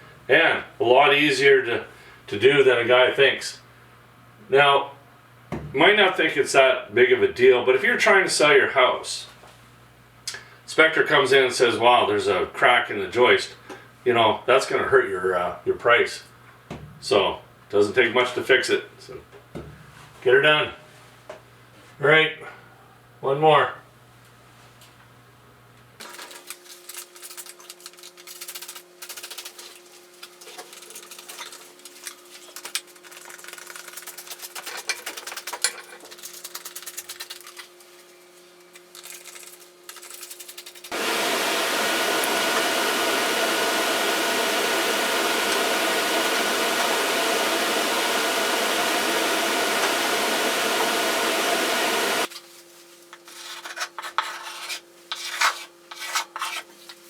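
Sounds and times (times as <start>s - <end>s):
loud steady noise: 40.9s - 52.3s
materials scraping and rubbing: 53.2s - 56.9s.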